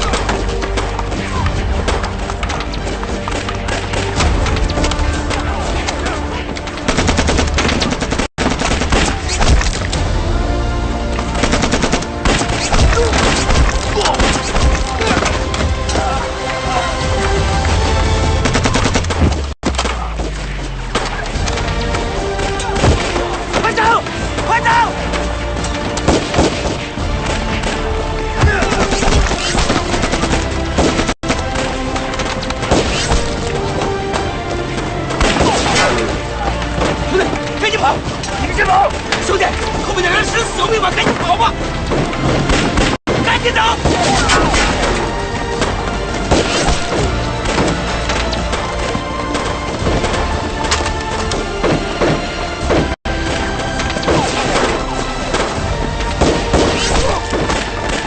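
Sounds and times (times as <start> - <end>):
dramatic music score: 0.0 - 58.0
gunfire: 6.8 - 9.8, 18.4 - 20.2, 26.0 - 31.8, 35.1 - 36.2, 54.0 - 58.0.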